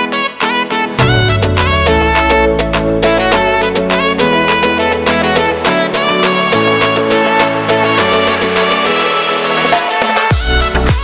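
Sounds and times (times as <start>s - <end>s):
deep bass: 1.0s - 5.7s
drum beats: 1.0s - 5.8s, 9.7s - 11.0s
sustained melodic instruments: 1.0s - 8.5s.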